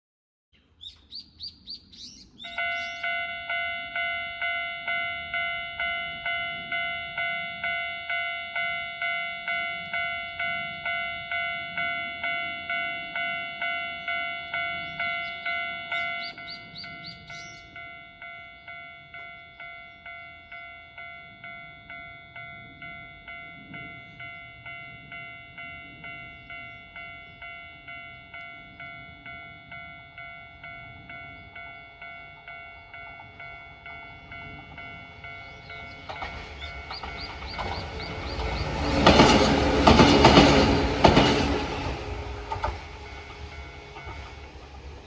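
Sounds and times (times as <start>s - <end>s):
bird chirps: 0.6s - 3.2s, 14.8s - 17.8s, 35.3s - 39.0s
level crossing warning bell: 2.4s - 44.7s.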